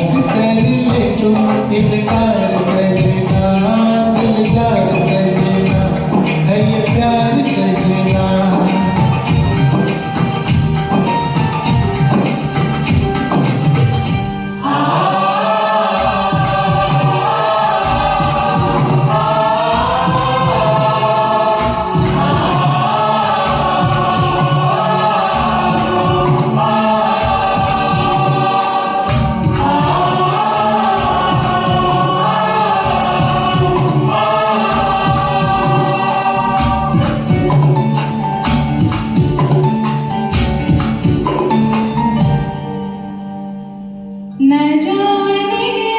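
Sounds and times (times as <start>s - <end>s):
percussion beat with tambourine: 0.0s - 14.5s, 15.6s - 42.6s
wordless choir-like vocals: 14.6s - 37.7s.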